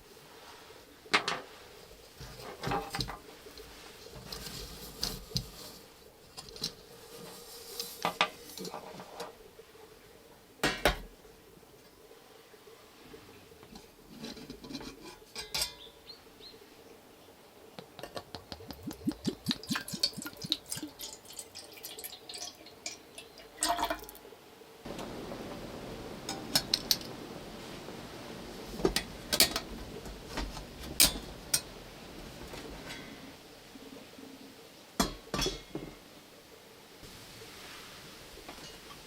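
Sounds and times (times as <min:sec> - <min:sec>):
steady hiss: 0:24.1 - 0:39.0.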